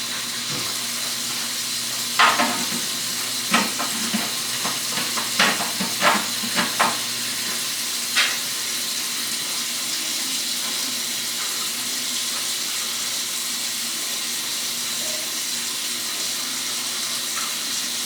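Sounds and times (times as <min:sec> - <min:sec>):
water running from tap: 0:00.0 - 0:18.0.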